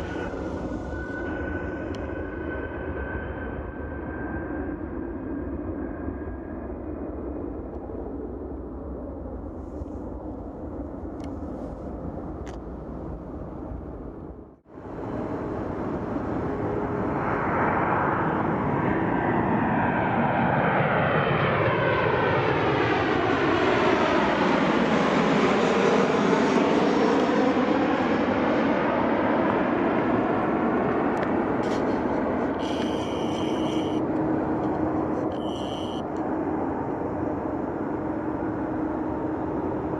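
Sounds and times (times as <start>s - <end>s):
jet airliner engines passing: 0.0s - 39.9s.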